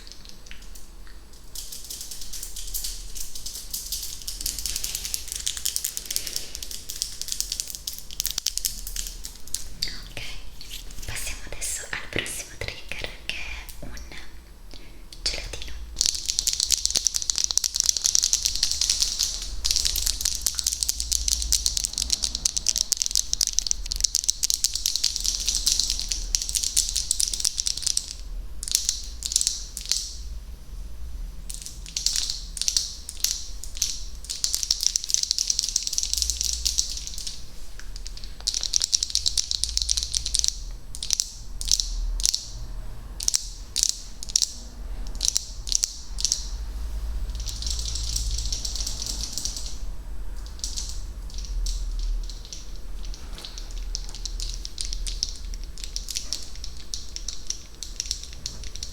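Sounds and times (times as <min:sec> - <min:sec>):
rapid crackling clicks: 0:00.0 - 0:10.0, 0:15.2 - 0:30.2, 0:31.5 - 0:58.9
separate clicks: 0:47.2 - 0:49.8.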